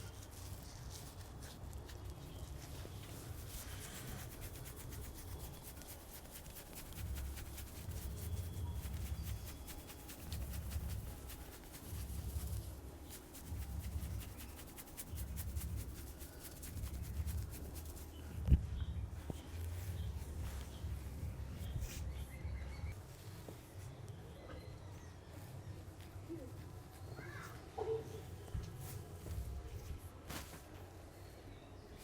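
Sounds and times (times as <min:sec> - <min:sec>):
hands rubbing skin: 0:00.2 - 0:18.3.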